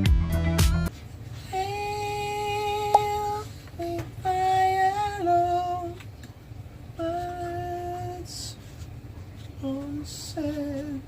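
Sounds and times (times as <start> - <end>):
slow song with female voice: 1.4 - 6.0, 9.6 - 11.0.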